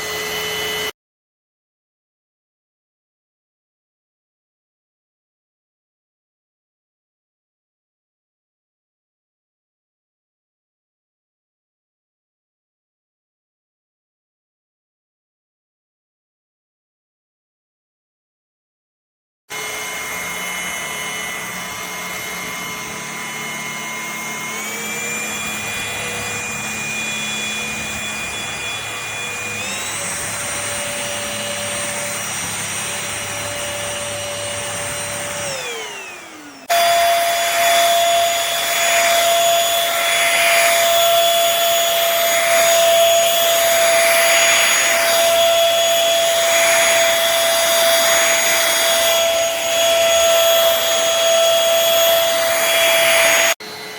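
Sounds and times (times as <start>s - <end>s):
louder vacuum with air rush: 0.0s - 0.9s, 19.5s - 53.9s
stick vacuum cleaner motor whining: 0.0s - 0.9s, 19.5s - 53.9s.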